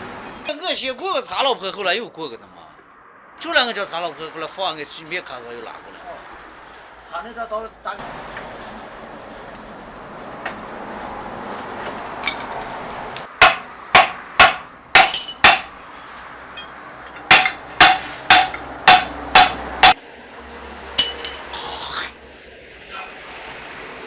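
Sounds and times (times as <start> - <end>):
hammer striking metal: 13.4 - 15.8, 16.6 - 20.0, 21.0 - 21.5.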